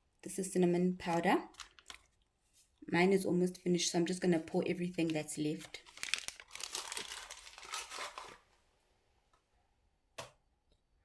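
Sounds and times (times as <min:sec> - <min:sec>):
plastic packet crinkling: 0:00.9 - 0:02.3, 0:04.9 - 0:08.4.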